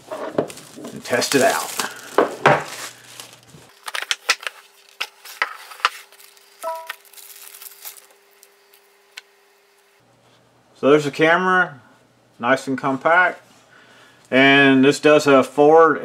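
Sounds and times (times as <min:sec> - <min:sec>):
packaging crinkling and rustling: 0:00.0 - 0:08.9.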